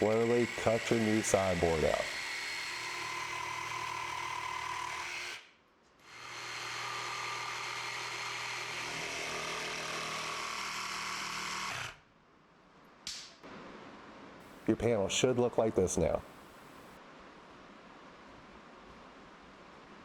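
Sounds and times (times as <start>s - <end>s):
jigsaw cutting wooden panel: 0.0s - 5.4s, 6.1s - 12.0s.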